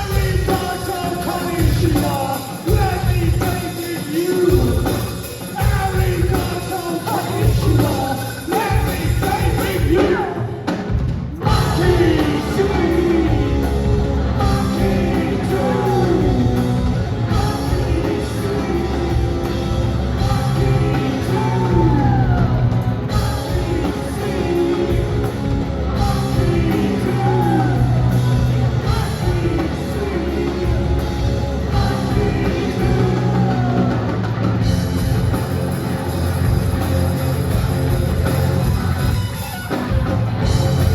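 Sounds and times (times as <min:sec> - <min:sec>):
rock band playing live: 0:00.0 - 0:40.9
person singing: 0:11.4 - 0:34.2.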